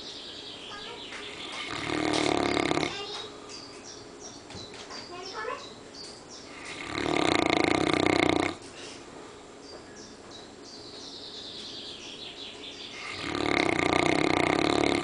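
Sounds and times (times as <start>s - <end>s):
dog snoring: 1.3s - 3.3s, 6.5s - 8.7s, 12.9s - 15.0s.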